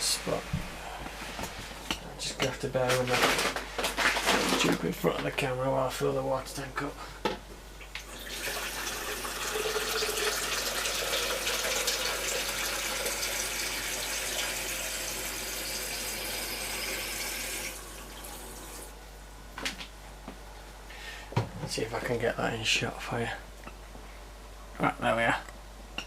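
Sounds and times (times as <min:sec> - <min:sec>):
water running from a tap into a jug: 0:08.1 - 0:18.9.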